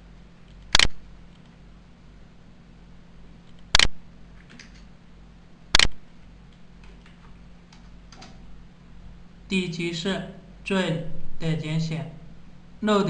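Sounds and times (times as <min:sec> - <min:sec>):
faint steady hum: 0:00.0 - 0:13.0
sharp clicks: 0:00.5 - 0:01.6, 0:03.4 - 0:04.9, 0:05.7 - 0:08.4.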